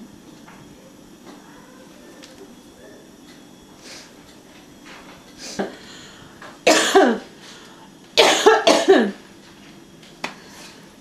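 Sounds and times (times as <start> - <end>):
person coughing: 6.7 - 7.3, 8.2 - 9.2.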